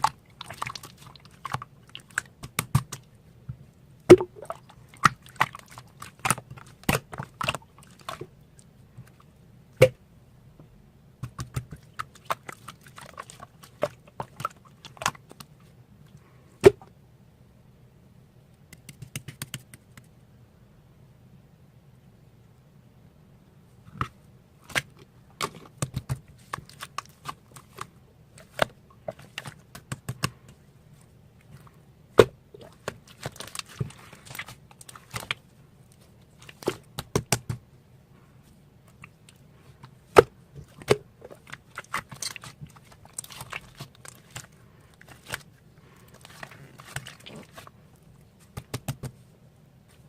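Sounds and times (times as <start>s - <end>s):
slime squelching: 0.0s - 3.2s, 4.0s - 10.0s, 11.2s - 15.8s, 24.0s - 37.6s, 38.2s - 49.3s
faint low hum: 0.0s - 50.0s.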